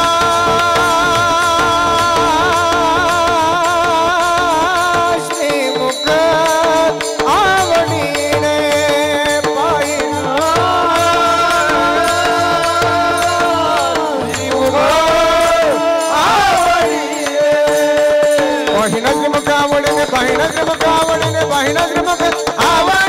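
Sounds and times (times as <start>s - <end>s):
jingling hand cymbals: 0.0s - 23.0s
steady percussion: 0.0s - 23.0s.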